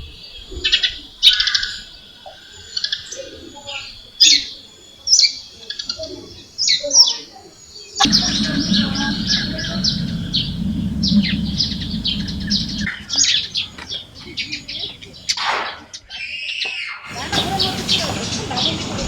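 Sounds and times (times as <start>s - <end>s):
steady low noise: 8.0s - 15.3s
small birds chirping: 8.0s - 15.4s, 17.1s - 19.0s.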